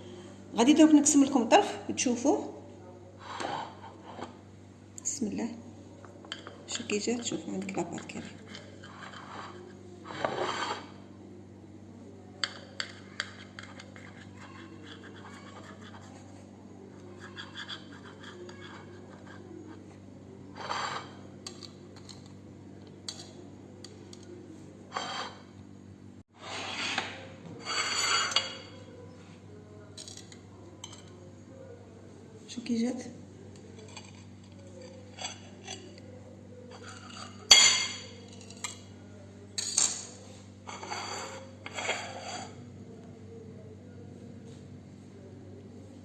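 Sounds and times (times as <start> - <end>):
low steady hum: 0.0 - 26.3.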